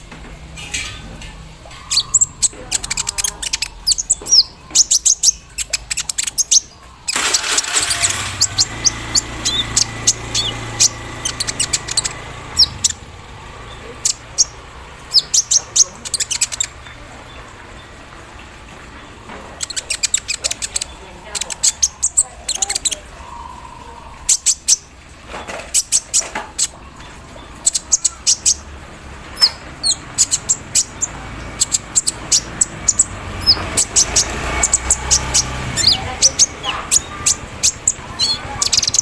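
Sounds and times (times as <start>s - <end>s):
sunbird chirping and trilling: 0.0s - 39.0s.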